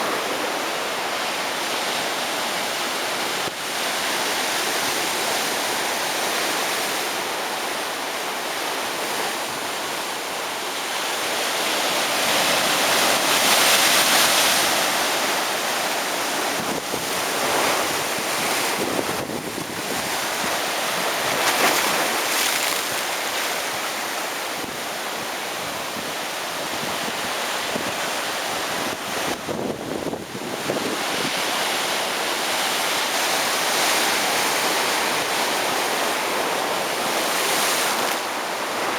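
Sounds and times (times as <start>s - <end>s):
ocean waves breaking: 0.0s - 4.4s, 11.4s - 29.6s.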